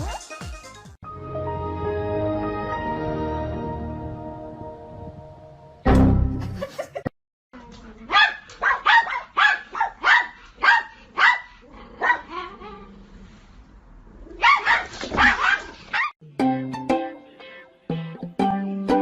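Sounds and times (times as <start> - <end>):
dog barking: 8.1 - 12.5, 14.4 - 16.2.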